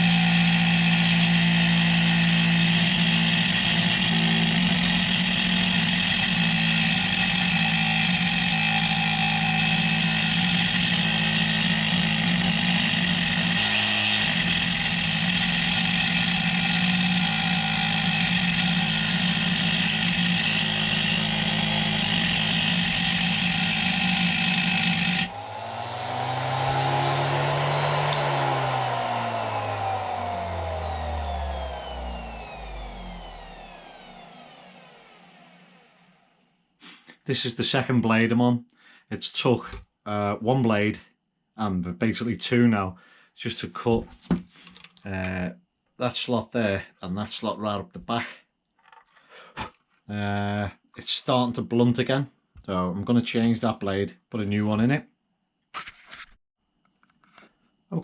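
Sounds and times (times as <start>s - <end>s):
rotary tool cutting metal: 0.0s - 35.5s
spinning disc winding down: 24.7s - 36.2s.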